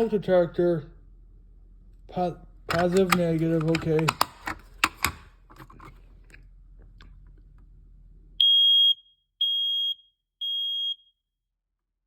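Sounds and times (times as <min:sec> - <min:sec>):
faint handling clicks: 0:02.7 - 0:06.4
smoke detector beeps: 0:08.4 - 0:11.1.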